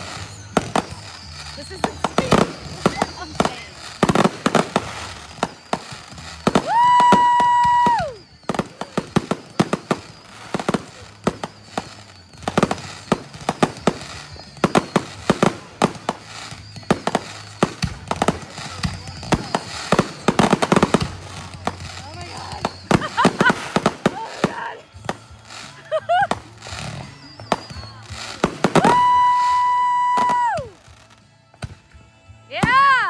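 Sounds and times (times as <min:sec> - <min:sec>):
high whistle tone: 0:00.0 - 0:04.0, 0:04.7 - 0:20.3, 0:26.8 - 0:30.8
fireworks bangs and crackles: 0:00.0 - 0:33.0.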